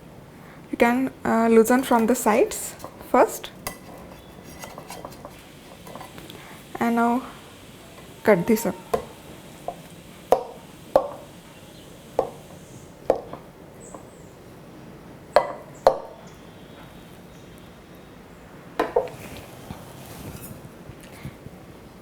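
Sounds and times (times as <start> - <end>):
knife knocking against bowl: 8.9 - 11.3, 12.2 - 12.4.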